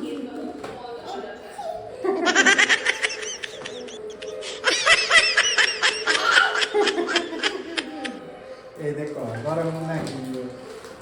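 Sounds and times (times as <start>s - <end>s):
young child giggling: 2.0s - 8.2s.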